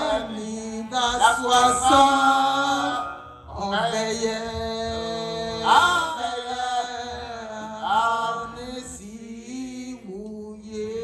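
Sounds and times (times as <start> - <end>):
church keyboard chords: 0.0 - 8.8
person chanting: 0.0 - 11.0.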